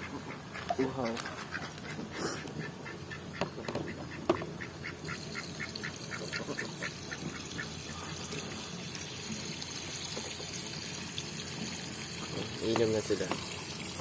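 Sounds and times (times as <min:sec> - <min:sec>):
ducks quacking: 0:00.0 - 0:08.0.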